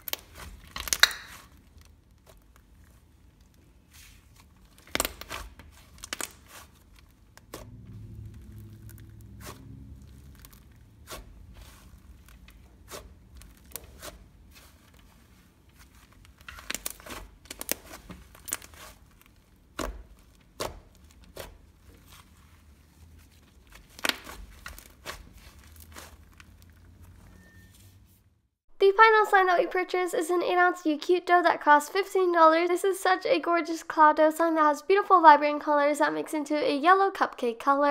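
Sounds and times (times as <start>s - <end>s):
slime popping: 0.0s - 2.7s
slime clicking and crackling: 0.0s - 3.7s, 4.3s - 27.2s.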